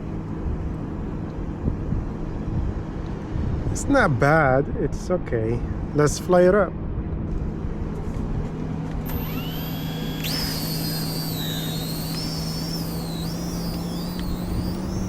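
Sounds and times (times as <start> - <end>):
steady low hum: 6.7 - 15.0
drone propellers whining: 8.8 - 15.0.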